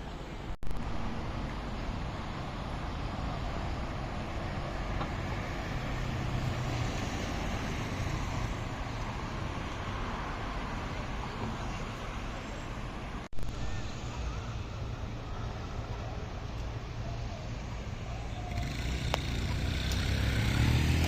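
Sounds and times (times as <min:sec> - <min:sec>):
distant road traffic: 0:00.0 - 0:21.0.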